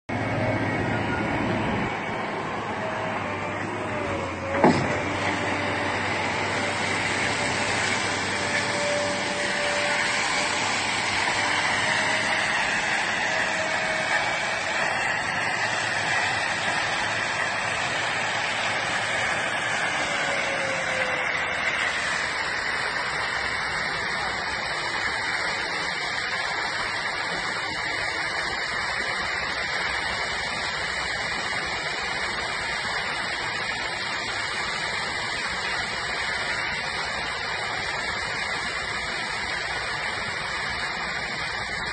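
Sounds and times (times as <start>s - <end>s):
faint machine tone: 0.1s - 4.6s, 5.2s - 16.7s
water spraying: 0.1s - 41.9s.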